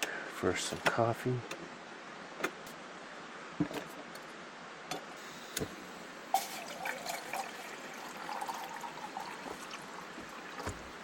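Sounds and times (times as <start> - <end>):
water pouring and gurgling: 6.3 - 11.0.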